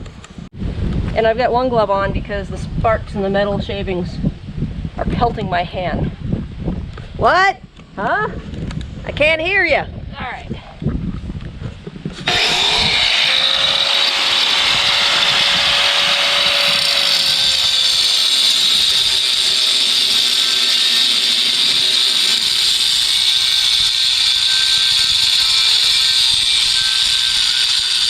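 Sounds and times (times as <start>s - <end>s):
angle grinder cutting steel: 12.2s - 28.0s.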